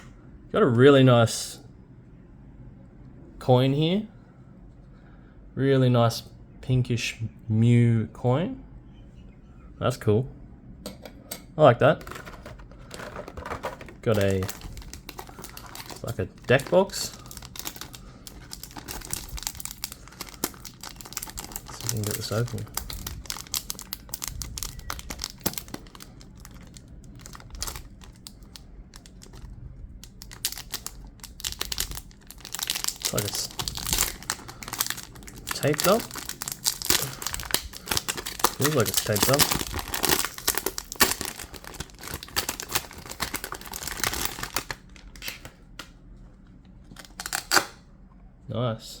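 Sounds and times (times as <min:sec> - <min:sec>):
packaging crinkling and tearing: 0:12.0 - 0:45.5, 0:46.9 - 0:47.8.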